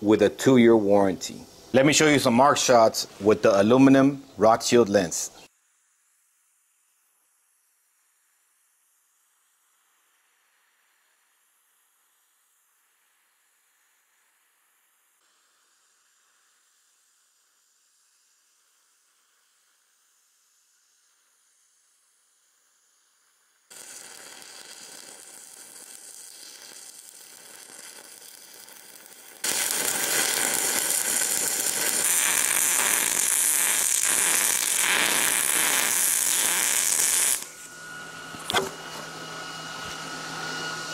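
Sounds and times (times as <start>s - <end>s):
welding arc crackling and hissing: 11.2s - 38.8s.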